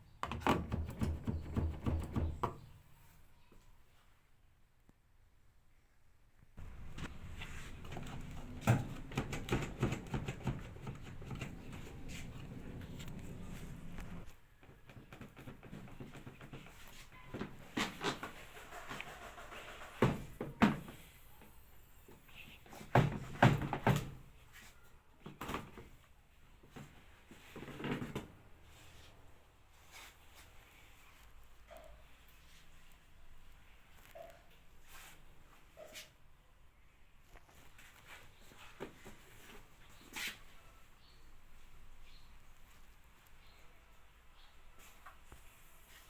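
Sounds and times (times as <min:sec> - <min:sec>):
plastic drawer knock: 0:00.2 - 0:02.7.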